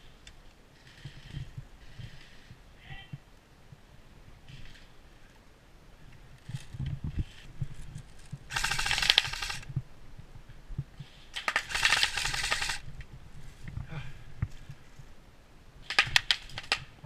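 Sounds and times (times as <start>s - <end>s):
airsoft gun full-auto bursts: 8.5s - 9.7s, 11.4s - 12.8s.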